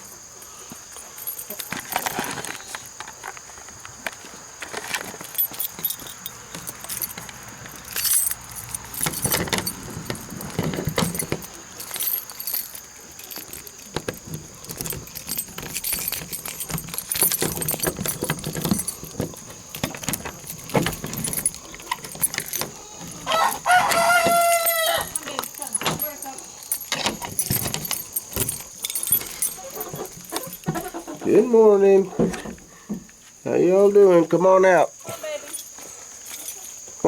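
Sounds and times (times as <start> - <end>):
keys jangling: 0.0 - 2.9, 4.8 - 31.5, 35.2 - 37.0
metal lock clicks and rattles: 4.7 - 31.0.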